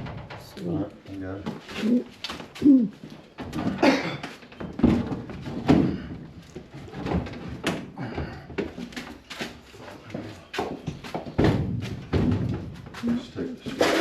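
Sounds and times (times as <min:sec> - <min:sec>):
knocks and thuds: 0:04.6 - 0:09.1, 0:10.6 - 0:13.0.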